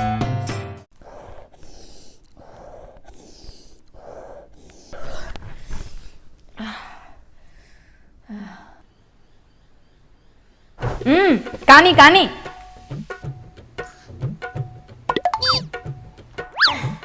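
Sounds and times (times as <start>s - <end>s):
person breathing wheezily: 1.0s - 8.8s.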